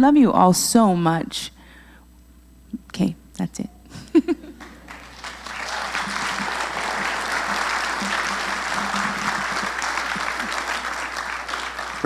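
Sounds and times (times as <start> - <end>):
congregation applauding: 4.5 - 12.0.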